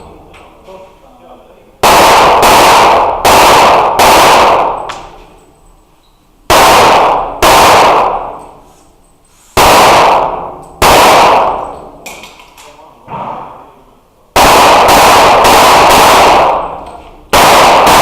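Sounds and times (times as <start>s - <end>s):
echoing pistol shots: 1.8s - 5.2s, 6.5s - 8.6s, 9.6s - 12.0s, 14.4s - 18.0s.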